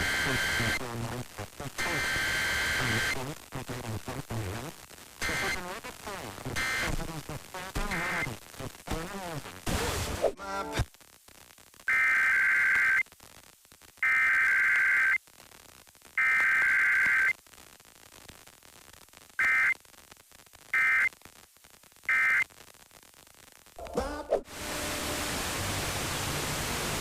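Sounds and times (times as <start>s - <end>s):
faint static: 0.0s - 27.0s
shrill two-tone digital data bursts: 14.0s - 15.2s.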